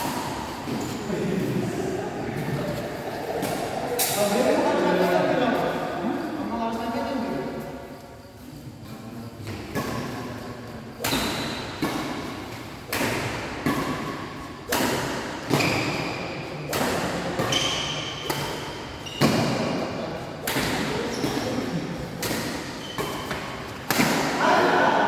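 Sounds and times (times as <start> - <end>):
rackets striking shuttlecock: 11.0 - 19.7, 20.4 - 24.4
shoe squeaks: 17.5 - 18.1, 19.0 - 19.4, 21.1 - 21.6, 22.8 - 23.4.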